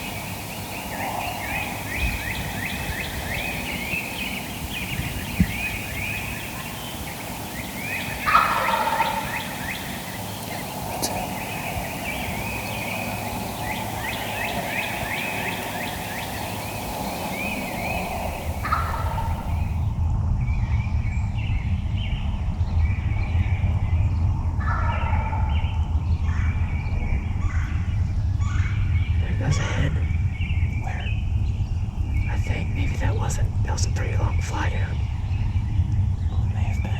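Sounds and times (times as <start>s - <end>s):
rapid repeated bird calls: 0.0s - 19.9s, 24.6s - 36.9s
turkey gobbling: 6.4s - 11.4s, 14.1s - 19.8s, 24.6s - 25.4s.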